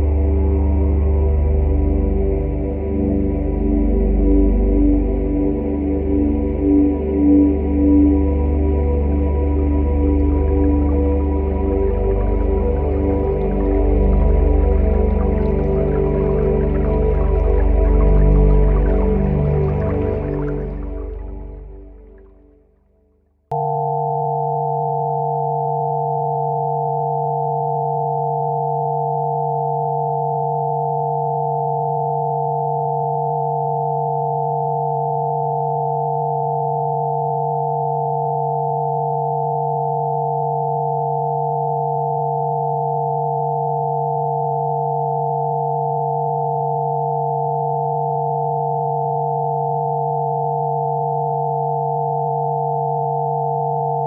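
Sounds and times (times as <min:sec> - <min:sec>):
steady electronic sine tones: 0:00.0 - 0:22.5, 0:23.5 - 0:54.0.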